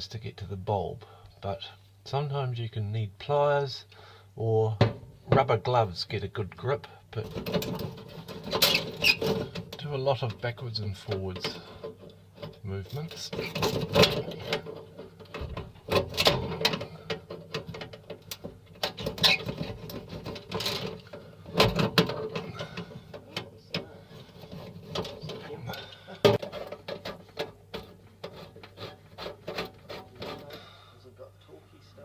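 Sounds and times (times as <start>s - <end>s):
glass cover scraping on thread: 7.2s - 9.9s, 11.1s - 30.8s.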